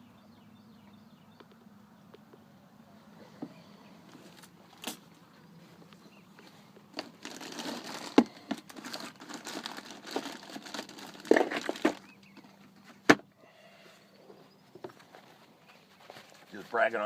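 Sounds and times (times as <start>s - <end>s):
rustling and crinkling: 3.1s - 13.3s, 14.2s - 17.0s.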